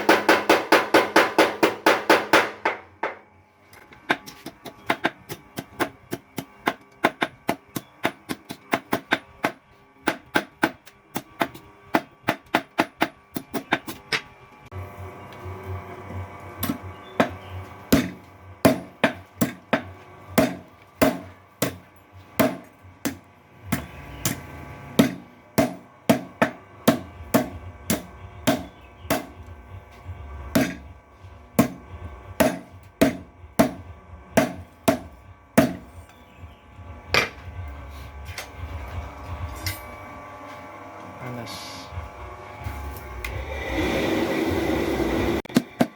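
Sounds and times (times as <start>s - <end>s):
power hammer striking metal: 0.0s - 3.2s, 16.6s - 29.4s, 30.5s - 30.9s, 31.6s - 36.1s
low steady hum: 0.0s - 45.9s.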